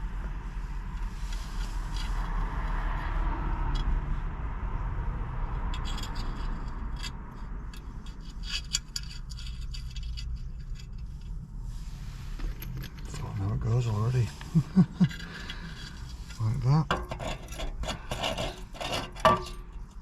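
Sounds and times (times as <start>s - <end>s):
metal clips scraping on iron door: 5.8s - 11.2s, 12.4s - 20.0s.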